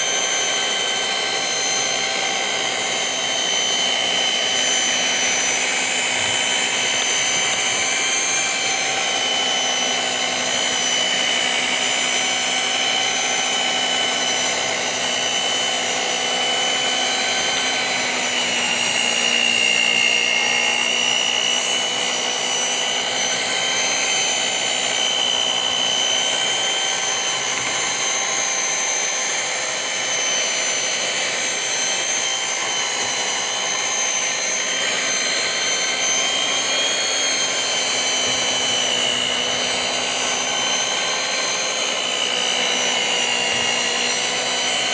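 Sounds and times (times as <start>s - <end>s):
electric mixer whining: 0.0s - 44.9s.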